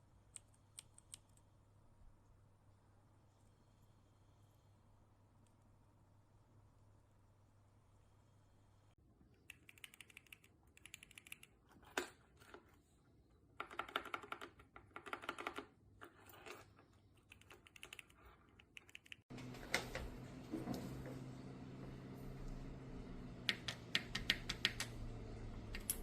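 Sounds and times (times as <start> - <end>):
steady low hum: 19.3 - 26.0
keyboard switches clicking: 23.4 - 25.0.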